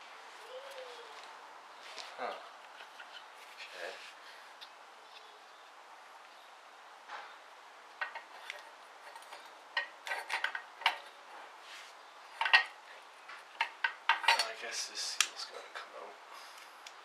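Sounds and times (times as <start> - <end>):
metal tools clinking on metal: 14.1 - 14.6.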